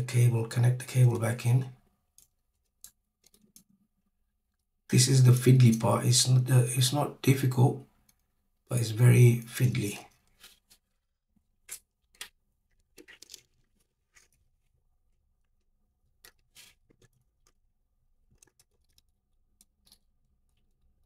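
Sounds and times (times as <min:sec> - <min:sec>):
small plastic parts clicking and scraping: 0:02.1 - 0:04.7, 0:10.1 - 0:21.0.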